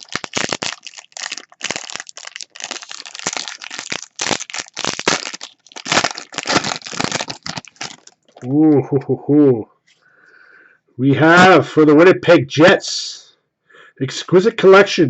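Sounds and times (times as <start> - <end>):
wrapper crackling and rustling: 0.0 - 8.5.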